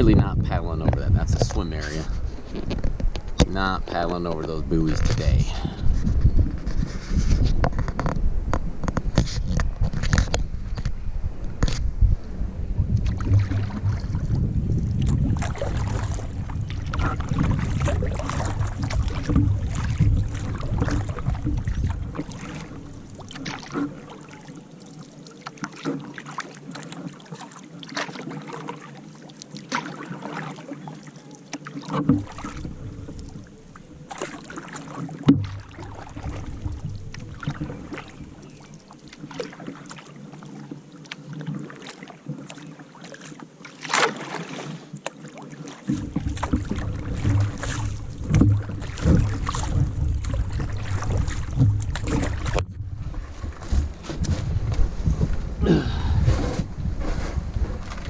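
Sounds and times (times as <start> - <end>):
paddles splashing in water: 0.0 - 58.0
low rumble: 9.7 - 22.2, 46.9 - 58.0.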